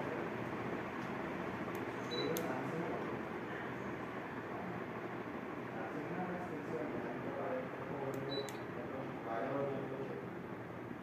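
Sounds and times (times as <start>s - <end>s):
ceiling fan rush of air: 0.0s - 11.0s.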